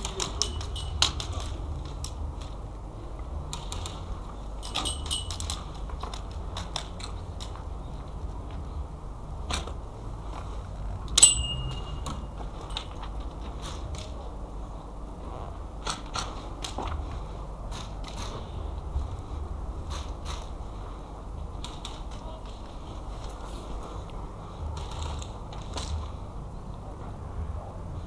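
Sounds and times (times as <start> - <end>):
high metallic ring: 0.0 - 1.4, 4.6 - 5.6, 11.2 - 12.9.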